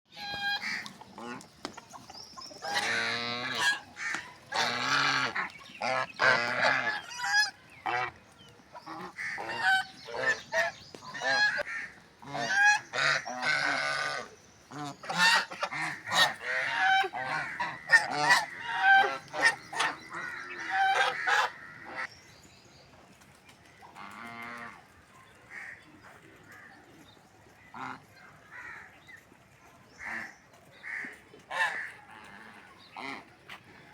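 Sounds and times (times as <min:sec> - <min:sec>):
geese honking: 0:02.6 - 0:08.2, 0:08.8 - 0:22.1, 0:30.9 - 0:33.9.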